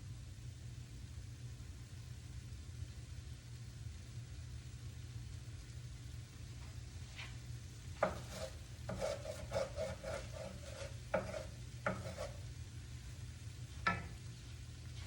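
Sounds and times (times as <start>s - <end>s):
steady low hum: 0.0s - 15.0s
utensil scraping rice in pan: 7.1s - 12.7s, 13.7s - 15.0s
utensil knocking on pan: 8.0s - 12.4s, 13.8s - 14.3s.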